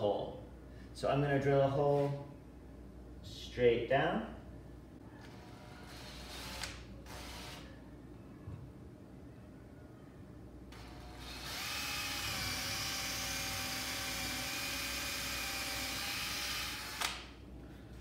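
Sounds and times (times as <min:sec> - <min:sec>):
electric drill whining: 0:10.8 - 0:17.2.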